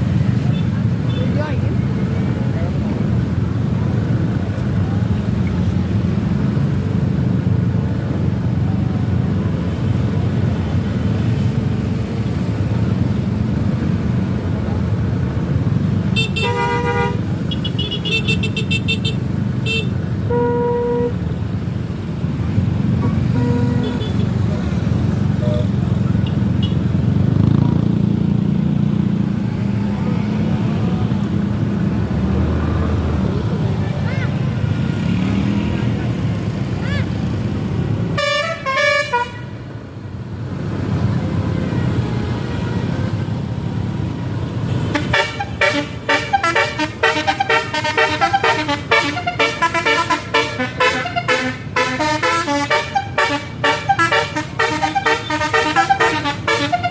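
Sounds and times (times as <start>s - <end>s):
bus engine running: 0.0s - 56.9s.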